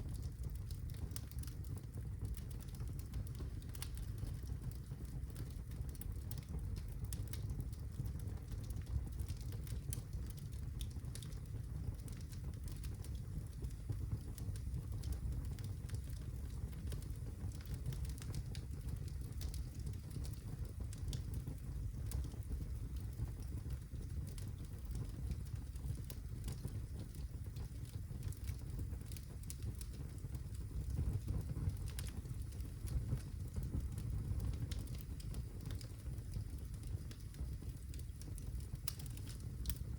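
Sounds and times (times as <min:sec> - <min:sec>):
low rumble of flame: 0:00.0 - 0:39.9
logs crackling and popping: 0:00.1 - 0:39.9.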